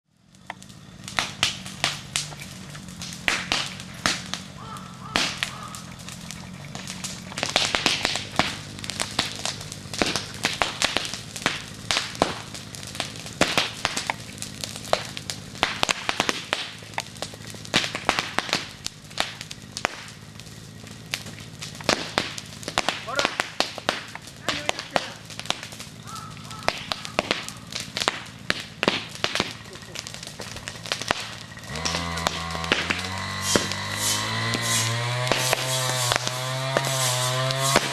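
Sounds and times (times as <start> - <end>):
wood fire crackling: 0.0 - 37.9
low hiss of burning: 0.1 - 37.9.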